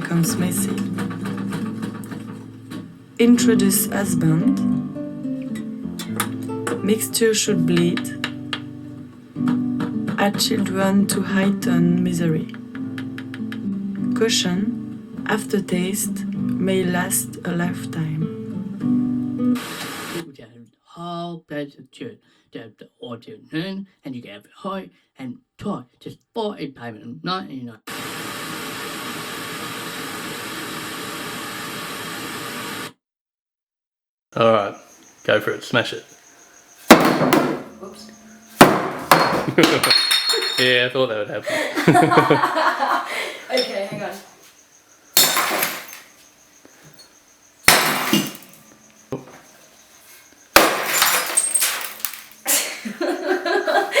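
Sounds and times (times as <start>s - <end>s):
glass smashing: 36.9s - 40.9s, 45.2s - 46.3s, 46.9s - 48.9s, 50.5s - 52.8s.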